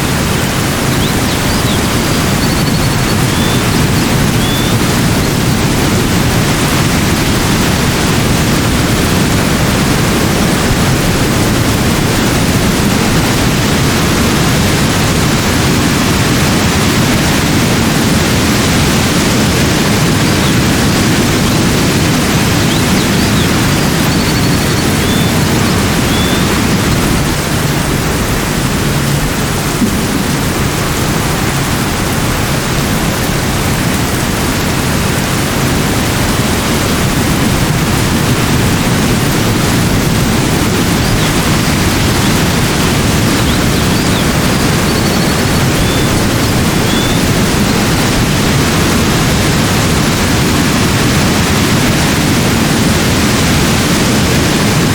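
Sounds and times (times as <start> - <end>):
loud steady rushing noise: 0.0 - 54.9
faint high chirps: 0.9 - 4.9, 20.3 - 27.2, 43.3 - 47.3.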